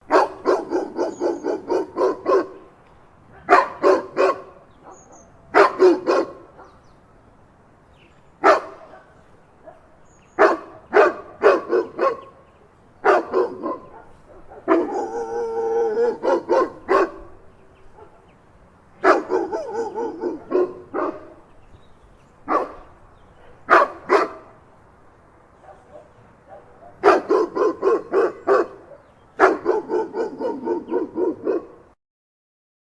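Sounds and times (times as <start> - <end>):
dog barking: 0.1 - 2.7, 3.3 - 6.8, 8.4 - 12.4, 13.0 - 18.3, 19.0 - 21.4, 22.5 - 24.6, 25.6 - 31.8.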